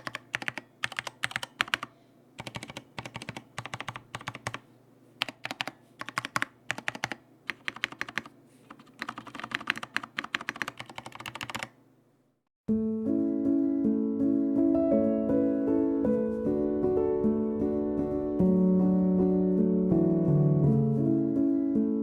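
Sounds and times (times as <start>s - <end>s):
typing on keyboard: 0.0s - 4.6s, 5.2s - 11.8s
soft piano music: 12.7s - 22.0s.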